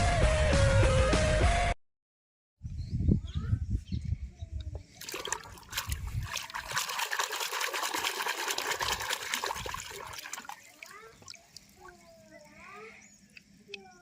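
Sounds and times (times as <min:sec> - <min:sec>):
water splattering over plastic toys: 0:05.0 - 0:12.0.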